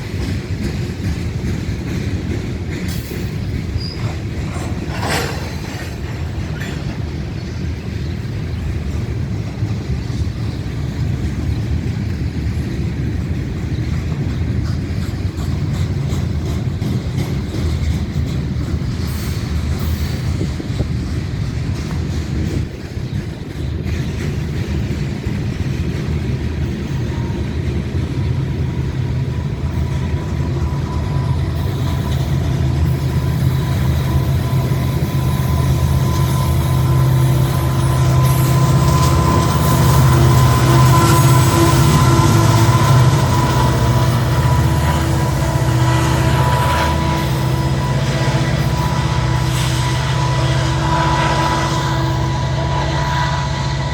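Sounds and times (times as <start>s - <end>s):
diesel locomotive engine drone: 0.0s - 53.9s
train wagons rumbling on rails: 0.0s - 53.9s
thin high whine: 30.5s - 53.9s.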